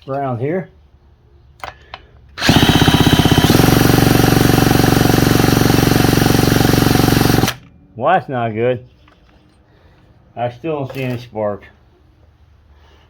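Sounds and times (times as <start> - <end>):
cordless drill motor whine: 2.4 - 3.6.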